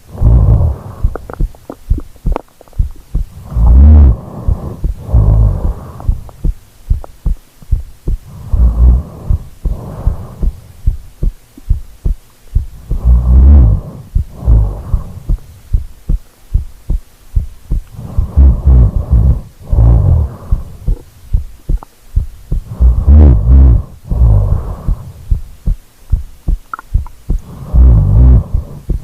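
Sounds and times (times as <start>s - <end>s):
person snoring loudly: 0.0s - 1.3s, 3.3s - 6.3s, 8.3s - 10.6s, 12.8s - 15.3s, 18.0s - 20.8s, 22.6s - 25.1s, 27.4s - 29.0s.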